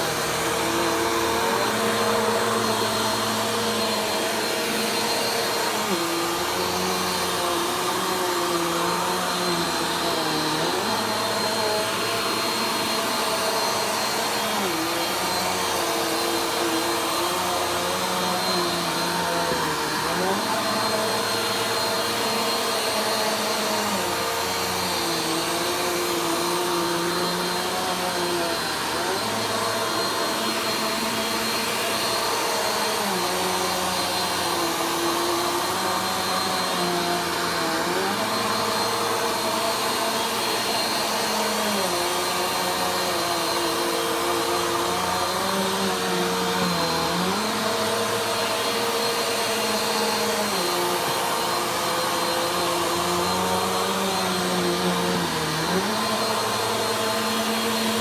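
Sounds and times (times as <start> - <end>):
vacuum cleaner running: 0.0 - 58.0.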